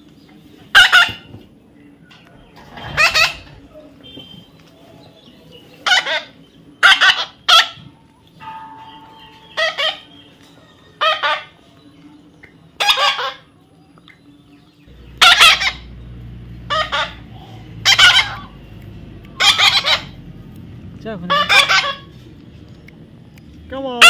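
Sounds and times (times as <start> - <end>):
bird squawking: 2.7 - 4.2, 15.0 - 18.6, 19.3 - 20.2, 21.2 - 22.2
low steady hum: 13.6 - 24.0.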